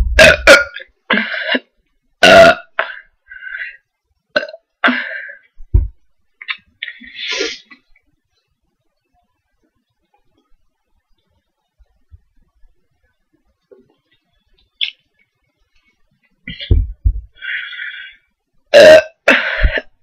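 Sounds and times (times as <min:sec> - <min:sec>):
loud burps: 0:00.2 - 0:03.0, 0:04.3 - 0:05.1, 0:18.7 - 0:19.9.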